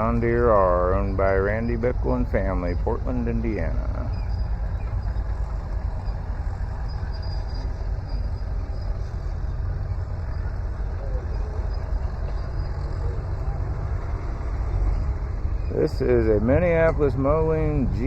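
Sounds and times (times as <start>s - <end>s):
steady low rumble: 0.0s - 18.0s
faint voices: 10.1s - 18.0s.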